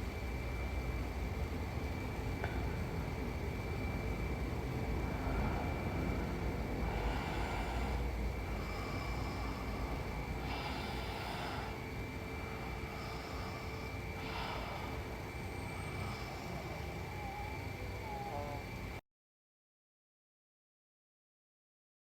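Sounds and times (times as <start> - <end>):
steady low hum: 0.0 - 19.0
woman snoring: 5.0 - 19.0.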